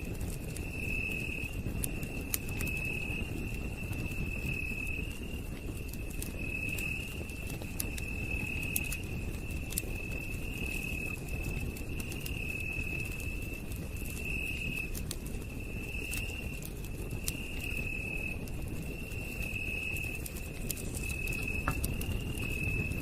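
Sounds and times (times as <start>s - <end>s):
campfire crackling and popping: 0.0s - 23.0s
low rumble of flame: 0.0s - 23.0s.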